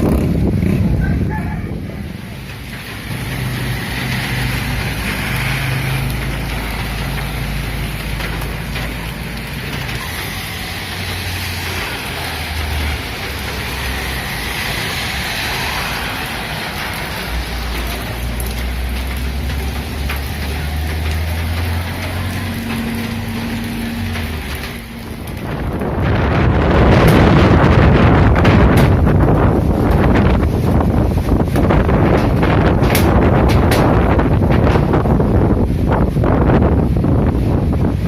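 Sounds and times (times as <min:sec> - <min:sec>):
low rumble: 0:00.0 - 0:38.0
steady rain: 0:00.0 - 0:38.0
wind: 0:00.0 - 0:38.0.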